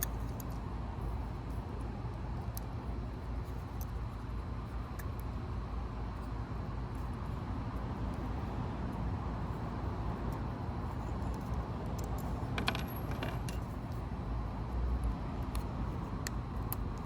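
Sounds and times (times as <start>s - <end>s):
metallic clicks of small tools: 0.0s - 0.6s.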